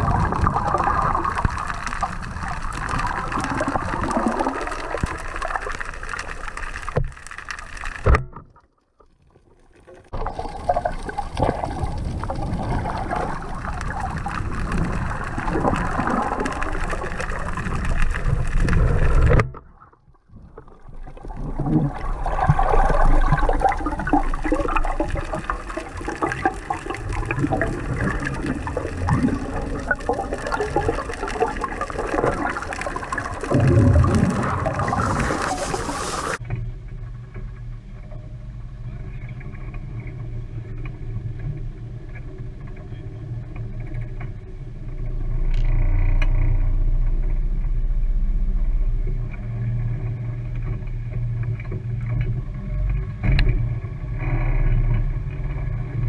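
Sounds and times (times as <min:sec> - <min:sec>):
water sloshing and gurgling: 0:00.0 - 0:36.4.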